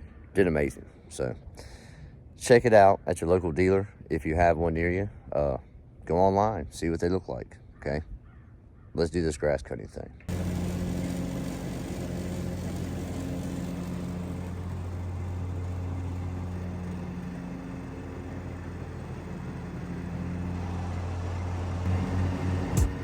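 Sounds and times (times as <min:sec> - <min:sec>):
mower engine droning: 0:10.3 - 0:23.0.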